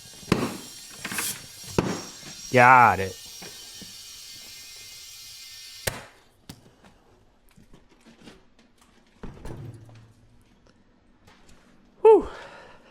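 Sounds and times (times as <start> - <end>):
compressed air hissing: 0.0 - 6.1.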